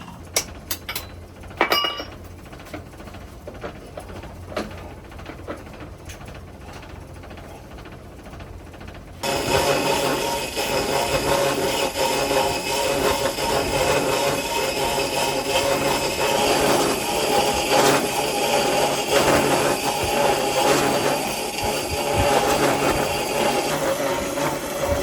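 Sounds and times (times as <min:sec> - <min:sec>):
power tool running: 0:09.2 - 0:25.0.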